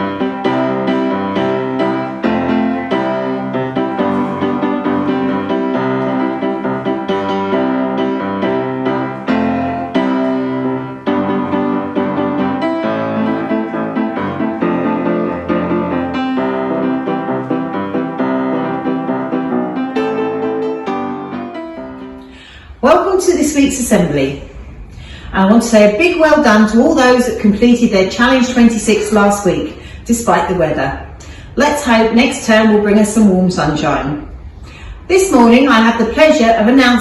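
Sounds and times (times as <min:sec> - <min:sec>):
piano background music: 0:00.0 - 0:23.7.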